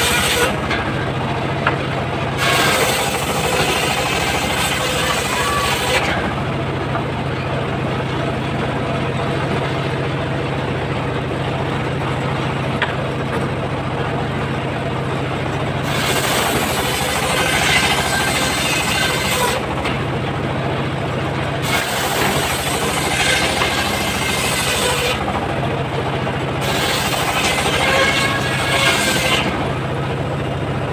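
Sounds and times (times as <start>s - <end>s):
saw blade cutting wood: 0.0s - 1.0s, 2.4s - 6.4s, 15.8s - 20.0s, 21.6s - 25.3s, 26.6s - 29.6s
sawmill engine hum: 0.0s - 30.9s.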